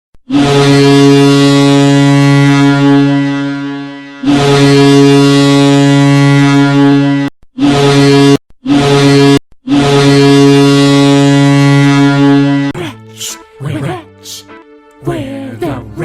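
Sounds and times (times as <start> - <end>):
deep goal horn blasts: 0.3 - 12.8.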